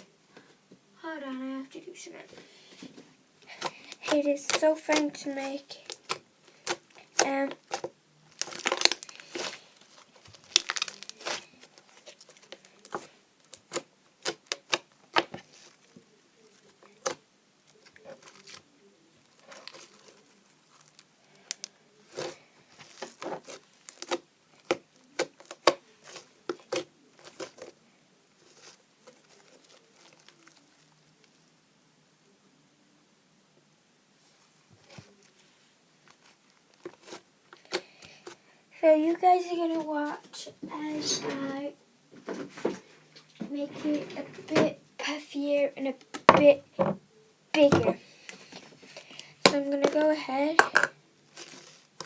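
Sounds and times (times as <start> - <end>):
slime crackling and popping: 3.4 - 31.5, 36.0 - 38.4, 51.2 - 52.0.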